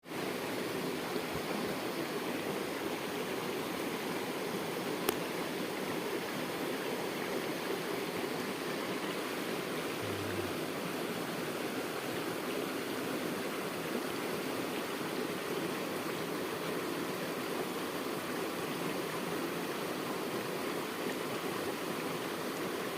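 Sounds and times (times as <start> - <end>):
river water flowing: 0.1 - 22.9.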